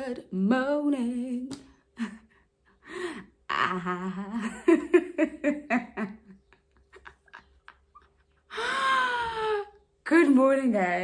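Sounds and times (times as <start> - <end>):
woman making wordless vocal sounds: 3.4 - 4.6.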